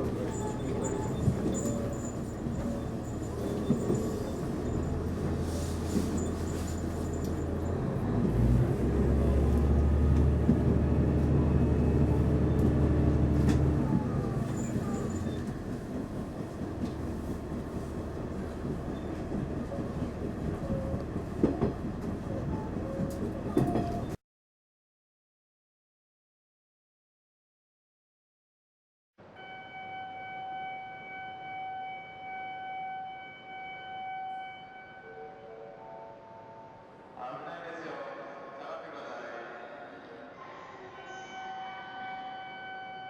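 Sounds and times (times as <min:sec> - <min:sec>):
train rumbling: 0:00.0 - 0:24.2.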